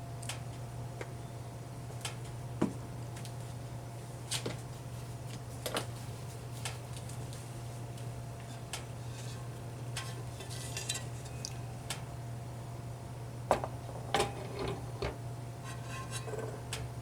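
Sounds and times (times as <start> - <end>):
steady low hum: 3.6 - 17.0.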